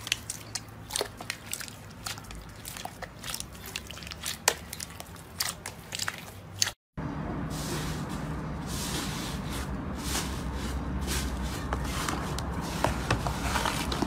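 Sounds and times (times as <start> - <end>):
slime squishing and crackling: 0.0 - 6.8.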